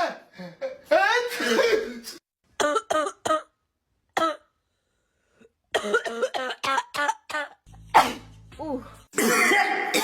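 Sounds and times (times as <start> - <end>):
person coughing: 5.7 - 8.3, 9.1 - 10.0.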